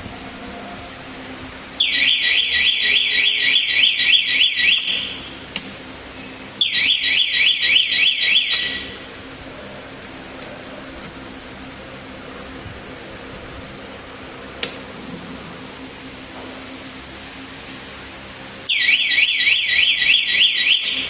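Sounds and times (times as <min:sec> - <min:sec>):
electronic alarm buzzer sweeps: 0:01.8 - 0:05.2.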